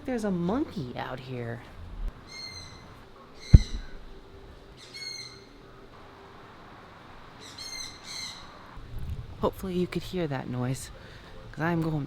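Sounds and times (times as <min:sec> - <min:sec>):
young owl screeching: 0:02.3 - 0:04.0, 0:04.8 - 0:05.5, 0:07.4 - 0:08.6
sharp thump: 0:03.5 - 0:04.0.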